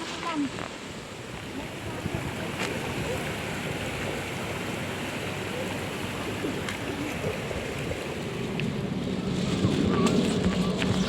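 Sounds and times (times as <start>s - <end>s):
stream and waterfall rushing: 0.0s - 8.6s.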